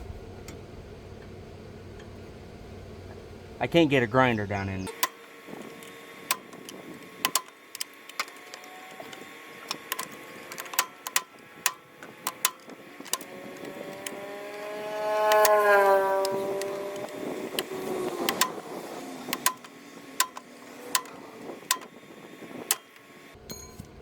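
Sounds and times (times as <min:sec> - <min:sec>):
steady motor hum: 0:00.0 - 0:24.0
hammer tapping steel punch: 0:23.5 - 0:24.0.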